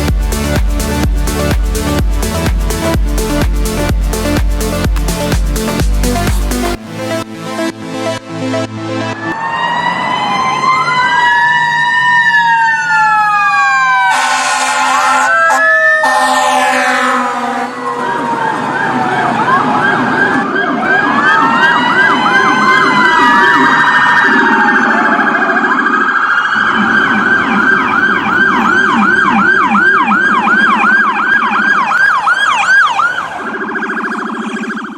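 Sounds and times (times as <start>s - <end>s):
wailing siren: 5.6s - 34.9s
fast yelp siren: 9.1s - 34.9s.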